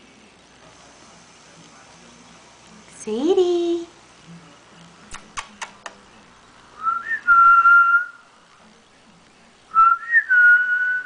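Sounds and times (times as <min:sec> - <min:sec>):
sharp clicks: 0:05.1 - 0:06.0.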